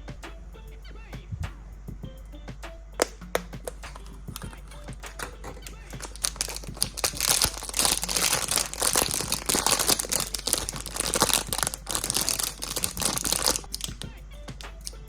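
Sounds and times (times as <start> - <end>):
packaging crinkling and tearing: 3.0 - 15.0.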